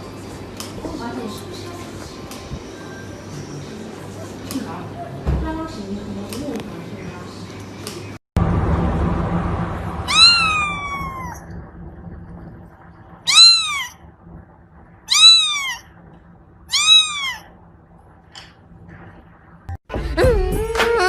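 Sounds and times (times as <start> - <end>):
cat meowing: 10.1 - 11.5, 13.2 - 14.0, 15.1 - 15.9, 16.7 - 17.5.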